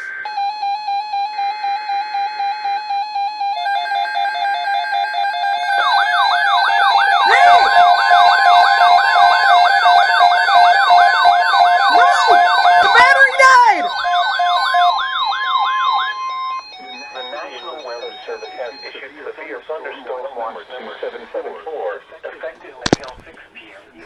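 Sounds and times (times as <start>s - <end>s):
warbling siren tones: 0.0s - 18.7s
steady alarm tone: 0.0s - 19.3s
weather radio alert alarms: 0.0s - 21.5s.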